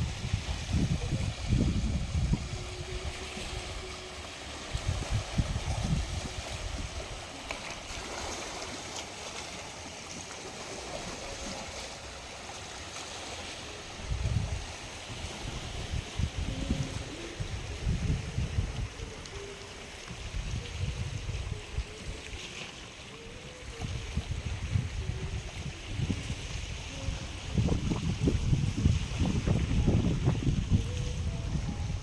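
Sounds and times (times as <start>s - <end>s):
wind buffeting microphone: 0.0s - 8.1s, 14.0s - 22.2s, 23.6s - 32.0s
waves washing on a beach: 0.0s - 32.0s.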